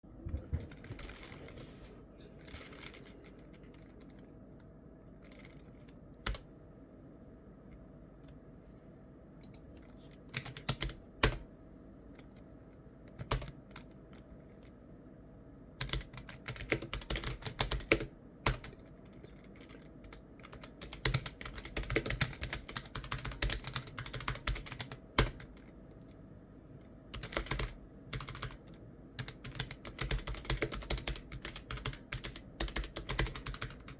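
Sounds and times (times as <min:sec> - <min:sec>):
keyboard keystrokes clicking: 0:05.2 - 0:06.5, 0:09.4 - 0:11.4, 0:13.1 - 0:14.7, 0:15.8 - 0:25.7, 0:27.1 - 0:33.9.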